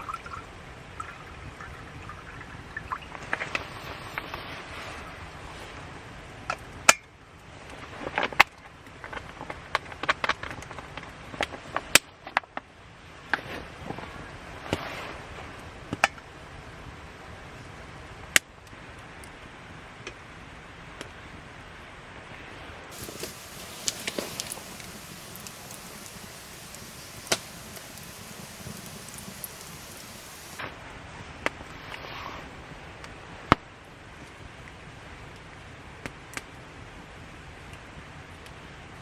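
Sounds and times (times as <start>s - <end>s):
campfire crackling: 22.9s - 30.7s
steady hiss: 22.9s - 30.7s.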